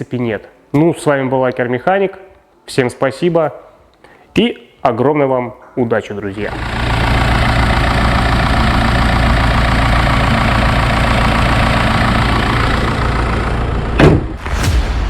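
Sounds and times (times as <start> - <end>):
petrol engine idling with ticking: 6.5 - 14.0
loud whoosh: 14.2 - 15.0.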